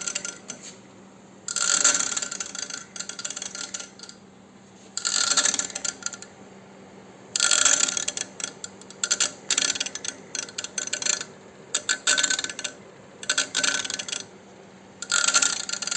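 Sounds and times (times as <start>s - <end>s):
grinding mechanical clicking: 0.0s - 0.6s, 1.5s - 4.2s, 5.0s - 6.4s, 7.4s - 14.3s, 15.0s - 15.9s
steady low hum: 0.0s - 15.9s.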